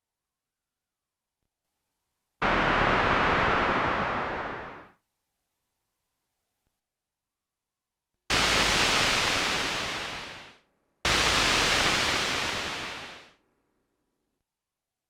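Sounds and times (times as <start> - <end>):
synthesizer white noise bursts: 2.4 - 4.9, 8.3 - 10.5, 11.1 - 13.3.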